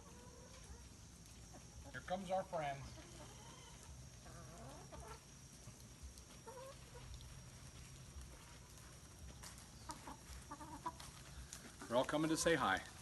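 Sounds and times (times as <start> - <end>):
hens clucking: 0.0 - 5.4, 6.4 - 7.3, 9.8 - 12.8.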